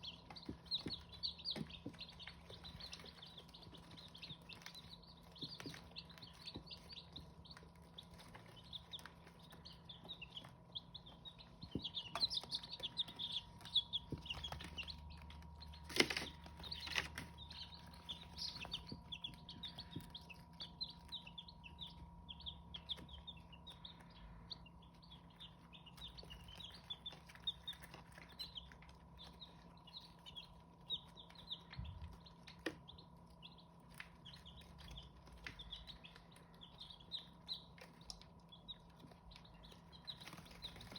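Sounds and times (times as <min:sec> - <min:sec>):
chicks peeping: 0:00.0 - 0:40.9
faint steady hum: 0:00.0 - 0:40.9.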